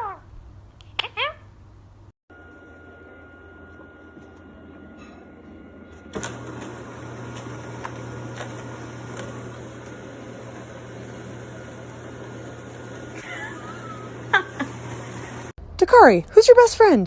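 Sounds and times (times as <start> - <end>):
appliance motor humming: 2.4 - 15.6.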